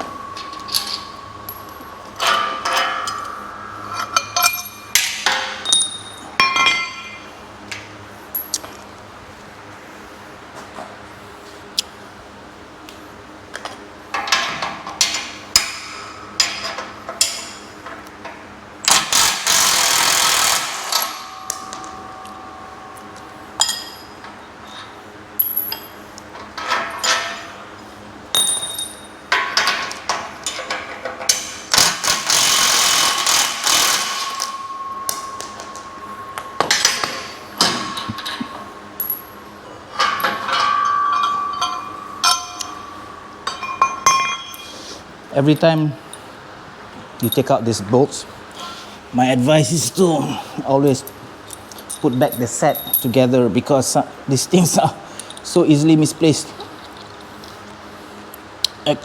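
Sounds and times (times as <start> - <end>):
metal scraping: 0.0 - 5.7
metal parts knocking and clinking: 0.0 - 8.6, 18.9 - 27.6, 28.3 - 44.9.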